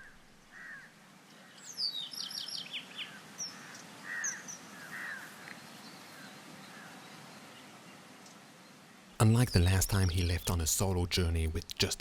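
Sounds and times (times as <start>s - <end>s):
songbirds singing: 0.0s - 6.9s, 9.2s - 11.4s.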